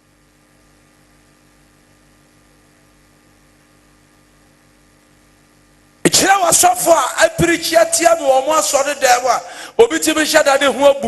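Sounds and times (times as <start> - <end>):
electrical mains hum: 0.0 - 11.0.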